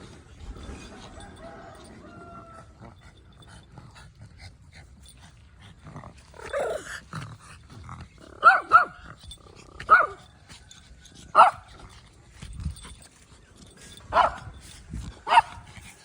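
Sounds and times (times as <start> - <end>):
puppy yipping: 15.3 - 15.7.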